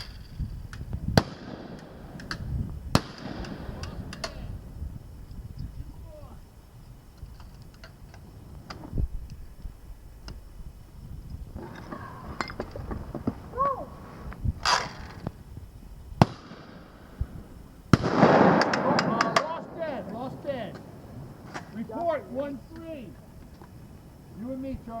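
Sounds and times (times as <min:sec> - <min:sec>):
shotgun shots: 0:01.2 - 0:02.1, 0:02.9 - 0:03.8, 0:16.2 - 0:16.9, 0:17.9 - 0:21.0.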